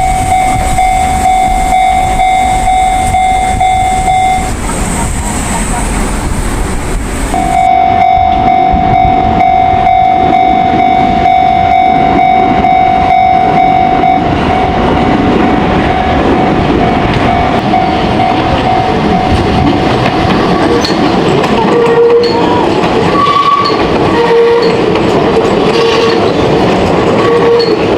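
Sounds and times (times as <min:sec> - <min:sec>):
level-crossing bell ringing: 0:00.0 - 0:04.6, 0:07.4 - 0:19.5
train rumbling past: 0:00.0 - 0:27.9.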